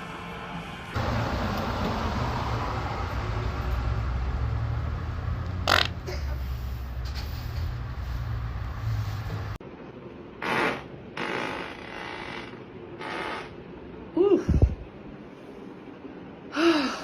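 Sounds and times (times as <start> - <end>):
long low fart: 5.6 - 6.2, 10.4 - 13.6.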